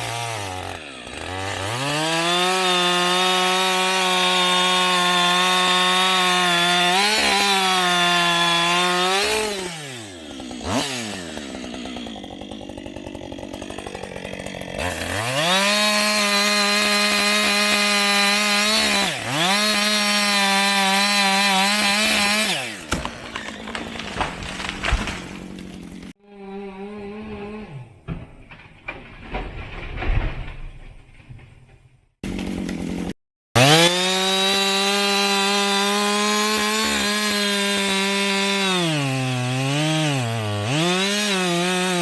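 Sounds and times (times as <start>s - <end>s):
chainsaw idling: 0.0s - 24.6s, 32.2s - 42.0s
chainsaw cutting wood: 0.0s - 30.3s, 32.2s - 42.0s.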